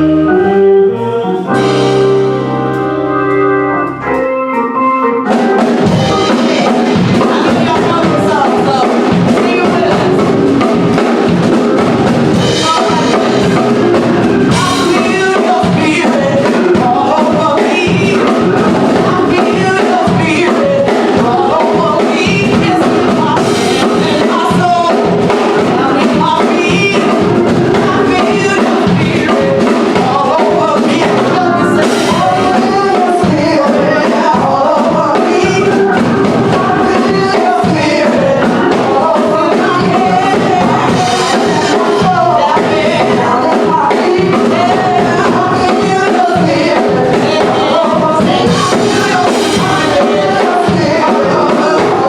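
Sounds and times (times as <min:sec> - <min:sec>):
gospel singers with band: 0:00.0 - 0:04.1, 0:05.2 - 0:52.0
drums beating: 0:01.2 - 0:52.0.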